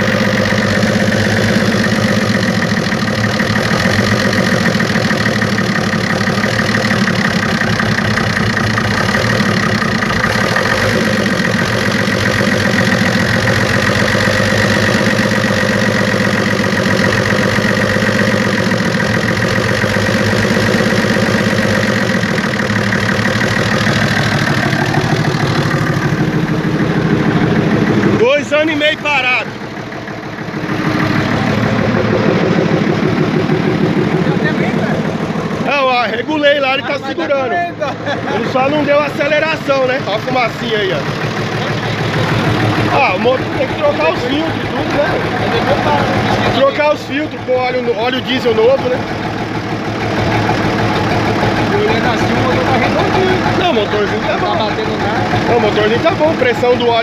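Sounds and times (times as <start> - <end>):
diesel engine idling: 0.0 - 57.0.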